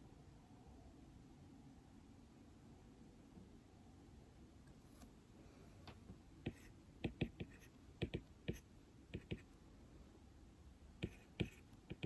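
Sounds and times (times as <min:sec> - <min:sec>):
tapping on tablet screen: 0:06.5 - 0:09.5.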